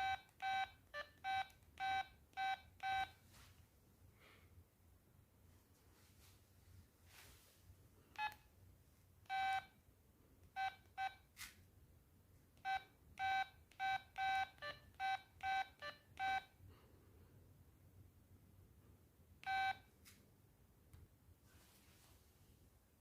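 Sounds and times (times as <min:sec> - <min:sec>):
mobile phone electronic beeps: 0:00.0 - 0:03.2, 0:08.2 - 0:08.4, 0:09.3 - 0:09.7, 0:10.6 - 0:11.2, 0:12.6 - 0:16.5, 0:19.4 - 0:19.9.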